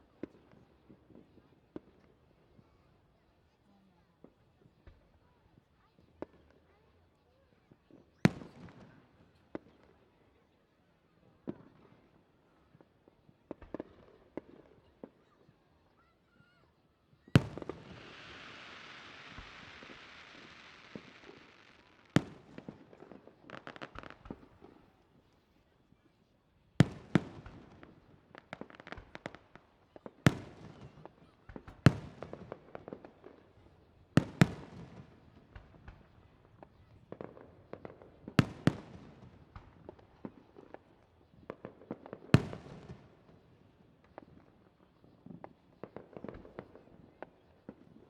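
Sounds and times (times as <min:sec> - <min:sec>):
firework shells bursting: 0:17.4 - 0:22.8
firework crackling: 0:17.4 - 0:24.9.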